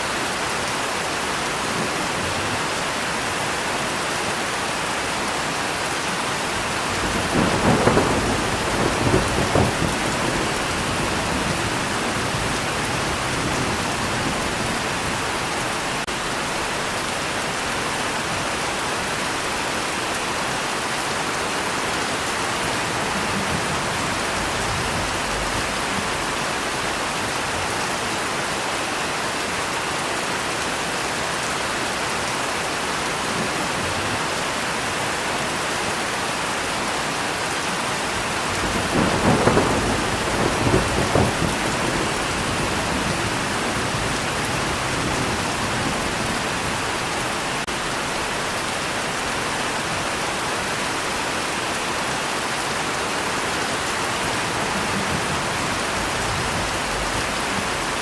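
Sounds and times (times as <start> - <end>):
steady rain: 0.0 - 58.0
thunderclap cracking: 6.9 - 14.8, 38.6 - 47.7.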